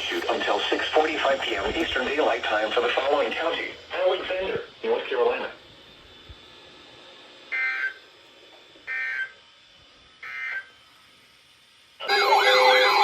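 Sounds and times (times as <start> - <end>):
shrill digital data bursts: 12.0 - 13.0
warbling siren-like tones: 12.0 - 13.0.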